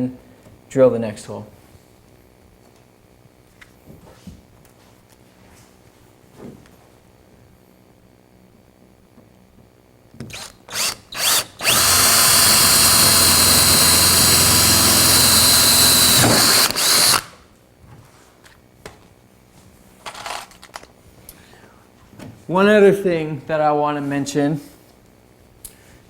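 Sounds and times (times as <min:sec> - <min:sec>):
power drill drilling into car door: 0:10.8 - 0:17.3.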